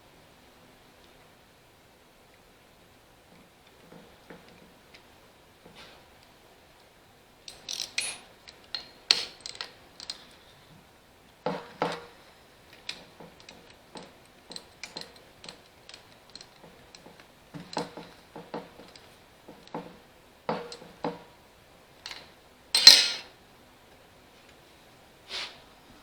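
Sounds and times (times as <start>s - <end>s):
sharp metal clinks: 7.5s - 10.2s, 22.8s - 23.3s
socket ratchet clicking: 7.5s - 10.2s, 22.8s - 23.3s.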